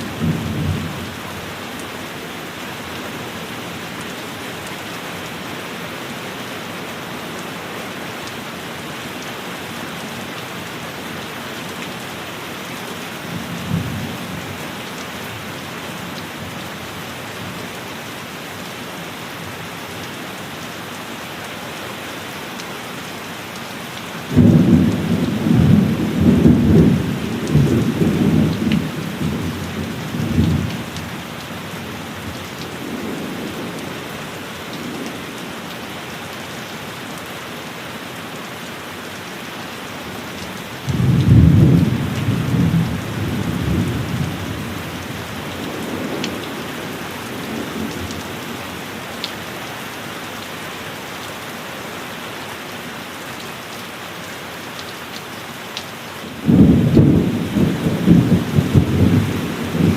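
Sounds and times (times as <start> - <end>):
heavy rain: 0.0 - 59.9
thunder rumbling: 24.3 - 31.1, 40.9 - 48.4, 56.4 - 59.9.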